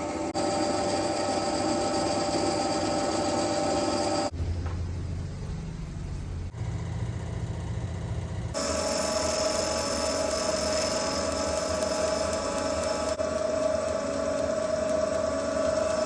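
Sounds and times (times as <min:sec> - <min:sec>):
electric machine tool whining: 0:08.6 - 0:16.0.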